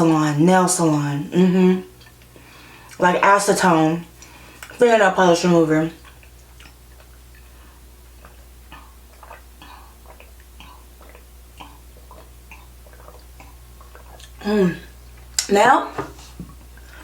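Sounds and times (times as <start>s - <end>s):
person chewing with wet mouth clicks: 6.0s - 7.5s, 8.1s - 14.4s.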